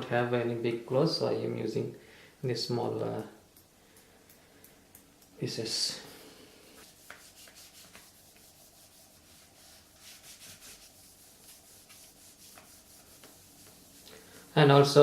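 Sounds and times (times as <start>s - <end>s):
cloth wiping a screen: 6.8s - 14.1s.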